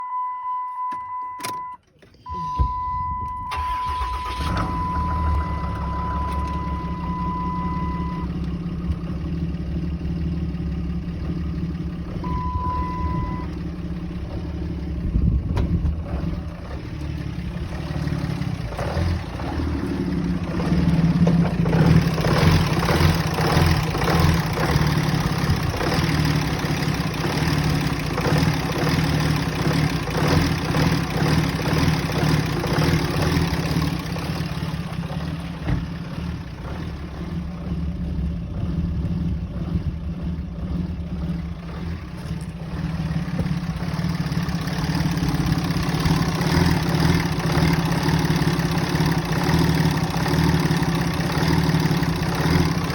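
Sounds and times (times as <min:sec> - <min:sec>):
electronic warning tone: 0:00.0 - 0:08.3
car engine idling roughly: 0:03.5 - 0:52.9.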